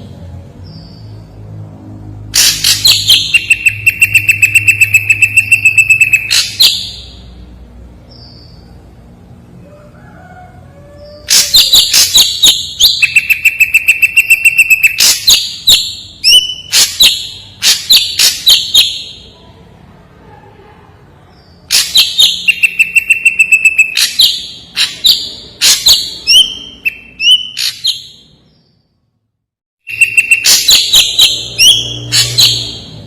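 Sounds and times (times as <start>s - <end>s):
bird singing whistled notes: 2.8s - 7.2s, 11.5s - 19.2s, 25.9s - 28.7s, 29.9s - 33.0s.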